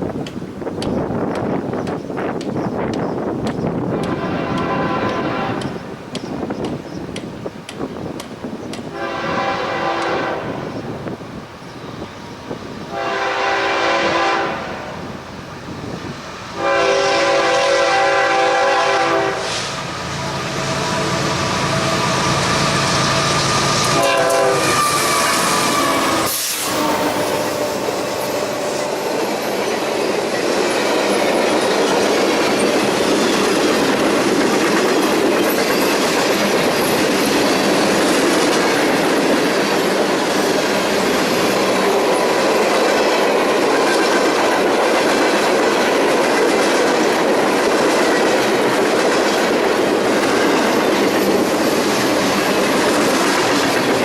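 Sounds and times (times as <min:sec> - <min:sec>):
clickety-clack over rail joints: 0:00.0 - 0:09.0, 0:27.2 - 0:54.0
train wheels rumbling on rails: 0:00.0 - 0:54.0
locomotive horn: 0:04.0 - 0:05.8, 0:08.9 - 0:10.7, 0:12.9 - 0:15.1, 0:16.6 - 0:29.2.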